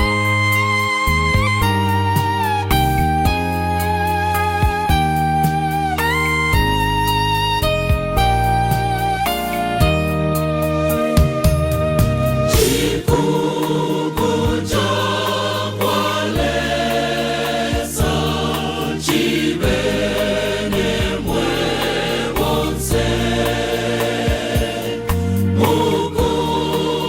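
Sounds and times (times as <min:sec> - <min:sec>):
instrumental backing with bass line: 0:00.0 - 0:27.0
choir singing a hymn: 0:12.5 - 0:27.0.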